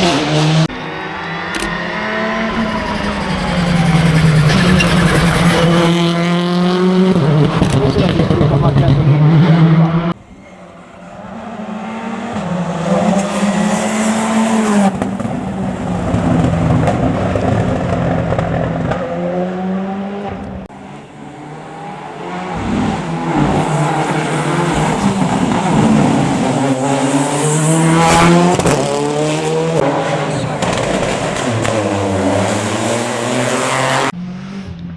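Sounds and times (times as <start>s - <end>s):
rally car engines revving: 0.0s - 34.9s
tyre squeal: 4.0s - 6.0s, 10.2s - 12.5s.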